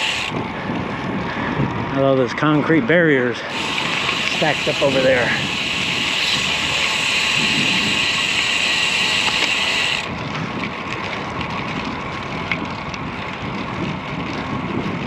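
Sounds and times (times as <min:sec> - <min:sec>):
wind rushing over microphone: 0:00.0 - 0:08.3, 0:10.0 - 0:15.0
loud high hiss: 0:03.5 - 0:10.0.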